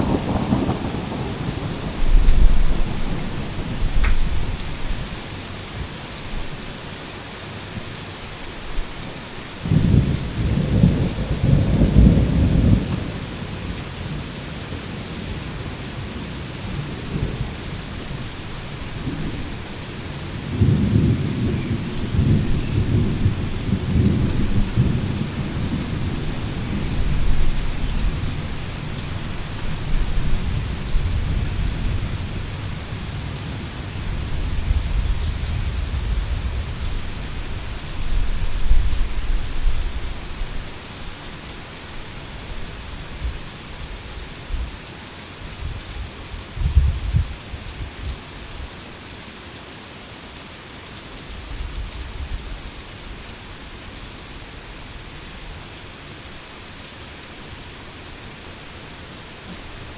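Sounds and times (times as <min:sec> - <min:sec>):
rolling thunder: 0:00.0 - 0:05.2, 0:09.6 - 0:14.3, 0:16.0 - 0:40.6
heavy rain: 0:00.0 - 0:59.9.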